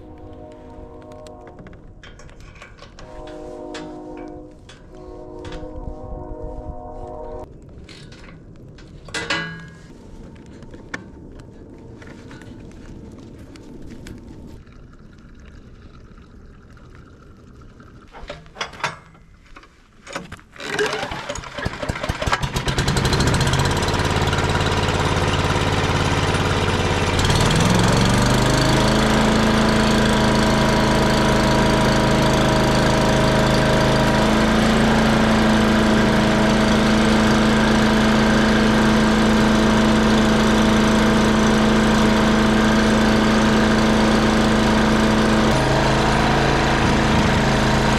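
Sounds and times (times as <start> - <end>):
engine pull-start: 18.1 - 34.3
small gasoline engine running: 20.6 - 47.9.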